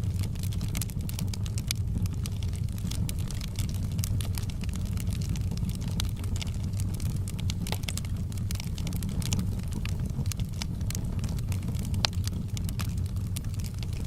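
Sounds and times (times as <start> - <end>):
burning wood popping: 0.0 - 14.0
campfire crackling: 0.0 - 14.0
low fire rumble: 0.0 - 14.0.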